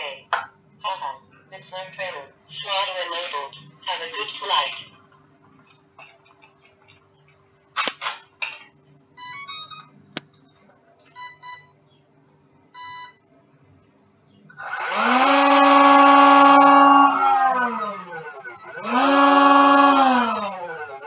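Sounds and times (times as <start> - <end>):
short electronic beeps: 9.2 - 9.9, 11.1 - 11.8, 12.8 - 13.2
electric motor whine: 14.5 - 21.0.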